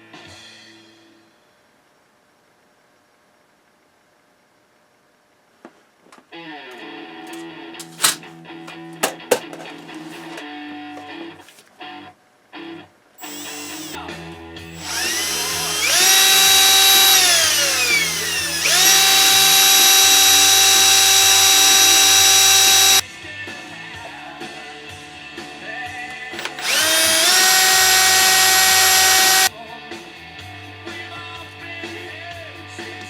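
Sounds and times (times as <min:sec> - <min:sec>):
power drill motor whine: 0:13.2 - 0:14.0, 0:14.7 - 0:23.0, 0:26.4 - 0:29.5.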